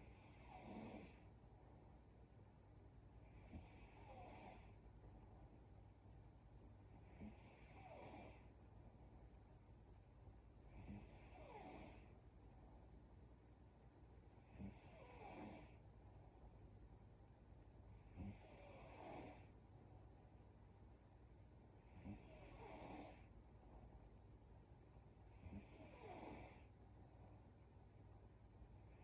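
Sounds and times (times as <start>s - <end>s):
woman snoring faintly: 0.0s - 1.3s, 7.0s - 8.5s, 10.7s - 12.1s, 14.5s - 15.8s, 21.8s - 23.3s, 25.4s - 26.7s.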